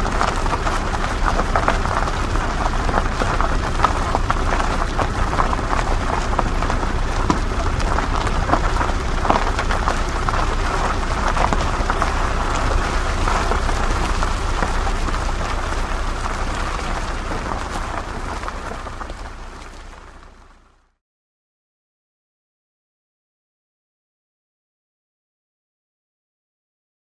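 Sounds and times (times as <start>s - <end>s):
crackling and clattering: 0.0s - 20.6s
off-road vehicle rumbling: 0.0s - 21.0s.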